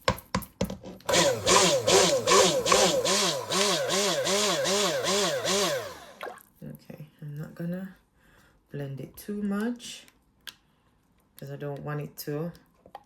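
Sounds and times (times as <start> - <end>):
stick blender running: 1.1 - 6.3.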